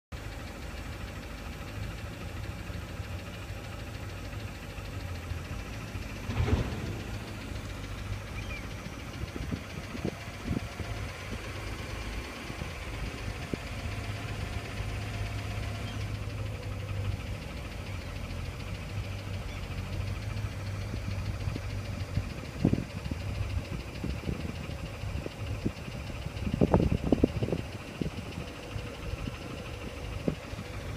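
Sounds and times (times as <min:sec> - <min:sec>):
engine idling with knock: 0:00.2 - 0:30.9
short thumps: 0:06.1 - 0:09.6.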